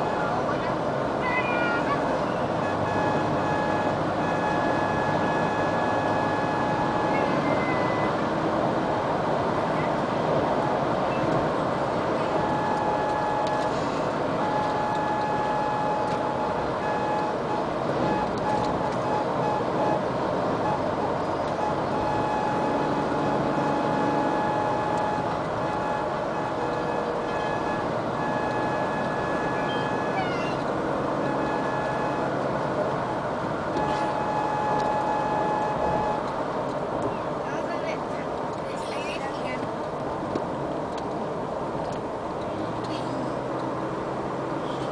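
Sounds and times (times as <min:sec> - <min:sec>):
thin whining tone: 0:00.0 - 0:08.2, 0:12.2 - 0:36.4
road and engine noise: 0:00.0 - 0:44.9.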